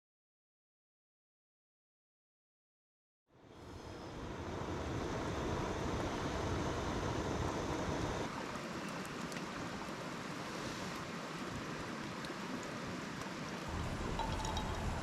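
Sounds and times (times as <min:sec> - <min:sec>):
steady rushing outdoor noise: 0:03.3 - 0:15.0.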